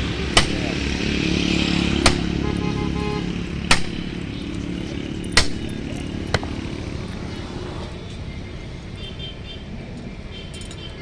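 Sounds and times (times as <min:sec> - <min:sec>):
hammer striking metal: 0:00.1 - 0:02.6, 0:03.5 - 0:04.4, 0:05.2 - 0:06.6.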